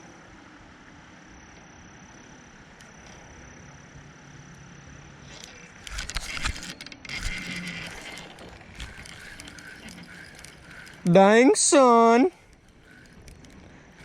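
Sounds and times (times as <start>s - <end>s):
fishing reel clicking: 5.4s - 14.0s.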